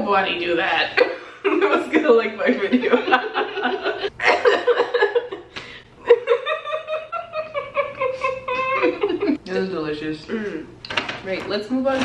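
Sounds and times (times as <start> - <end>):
people laughing: 1.0 - 9.4.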